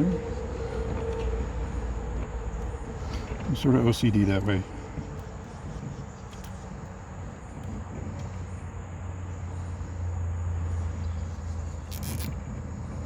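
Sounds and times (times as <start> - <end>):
wiring clicks: 11.8 - 12.5.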